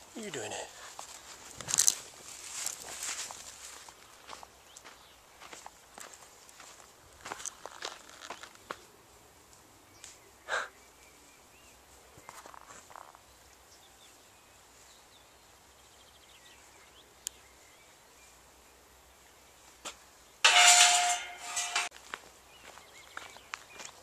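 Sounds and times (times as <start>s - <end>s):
soft rustles: 0.7s - 4.4s, 11.7s - 13.3s
breathy snort: 10.5s - 10.8s.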